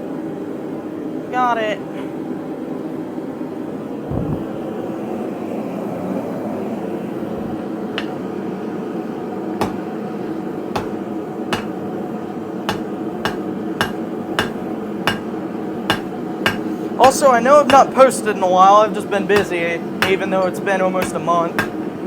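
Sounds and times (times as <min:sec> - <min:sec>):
steady mechanical hum: 0:00.0 - 0:22.0
hammer striking hot steel: 0:08.0 - 0:08.2, 0:09.6 - 0:10.0, 0:10.7 - 0:11.9, 0:12.7 - 0:22.0.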